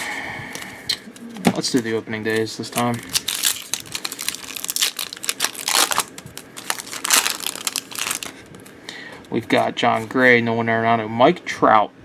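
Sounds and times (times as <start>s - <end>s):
wrapper crinkling: 2.3s - 8.6s.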